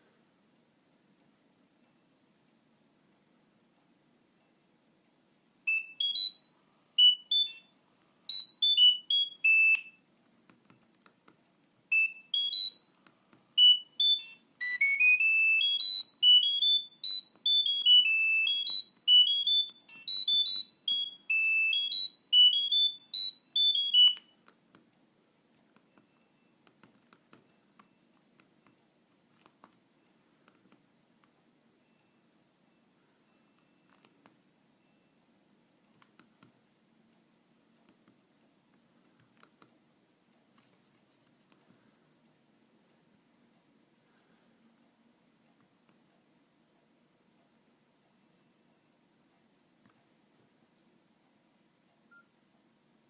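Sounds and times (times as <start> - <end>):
mobile phone ringtone melody: 5.7 - 10.0, 11.9 - 12.8, 13.6 - 24.3.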